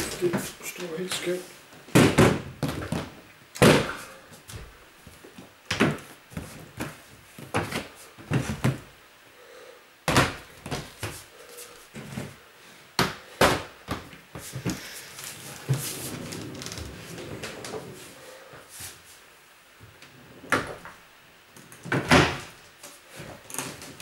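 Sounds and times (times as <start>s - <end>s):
boxes thumping and knocking: 1.9s - 4.0s, 5.7s - 8.9s, 10.1s - 11.2s.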